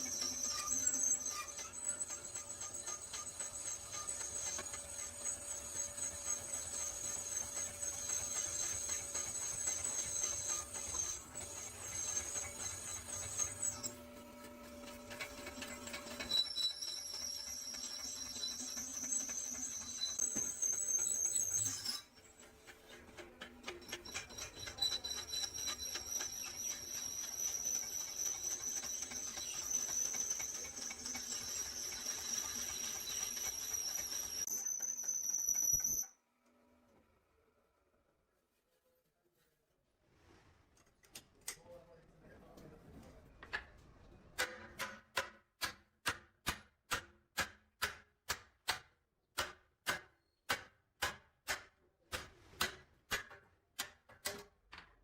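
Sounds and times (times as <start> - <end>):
workshop machine high whine: 0.0 - 36.1.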